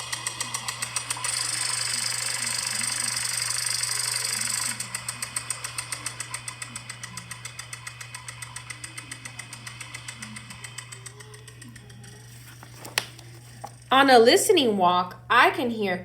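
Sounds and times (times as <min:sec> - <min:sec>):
sprinkler fast ticking: 0:05.4 - 0:12.0.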